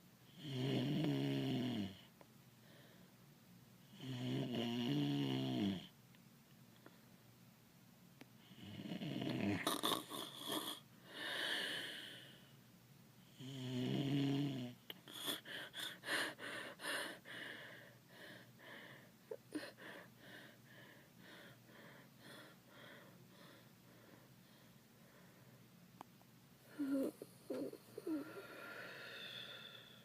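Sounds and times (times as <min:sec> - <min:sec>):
person snoring: 0:13.4 - 0:17.3, 0:26.7 - 0:30.0.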